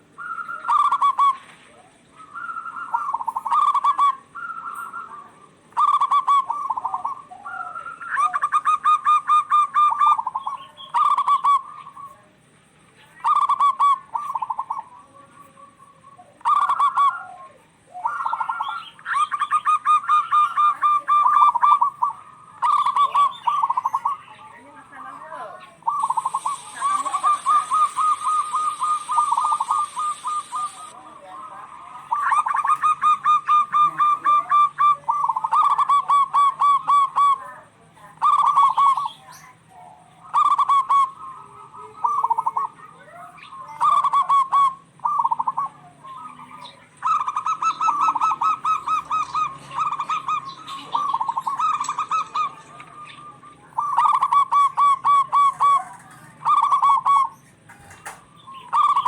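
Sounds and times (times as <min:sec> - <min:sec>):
doves cooing in trilled bouts: 0:00.0 - 0:59.0.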